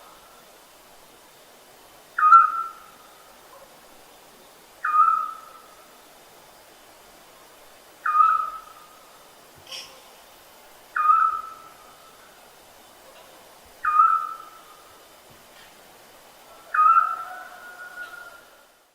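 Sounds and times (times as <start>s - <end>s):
owl whistled call: 2.2s - 2.9s, 4.8s - 5.6s, 8.0s - 8.9s, 11.0s - 11.7s, 13.8s - 14.6s, 16.7s - 18.4s.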